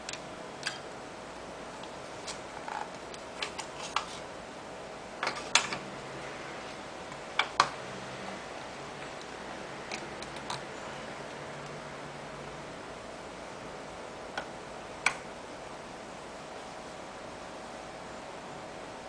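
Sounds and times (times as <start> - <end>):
hard drive buzzing whine: 0.0 - 19.0
hard drive clicks: 9.9 - 10.7, 14.3 - 15.3.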